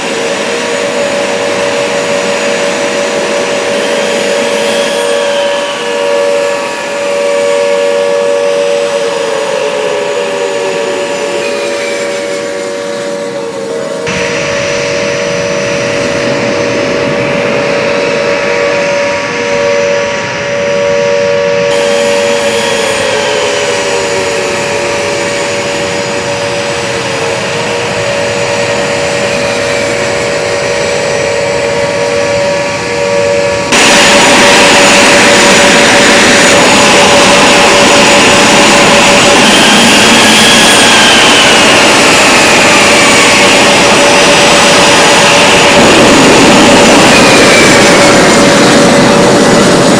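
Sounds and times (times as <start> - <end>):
jet engines high whine: 0.0 - 49.9.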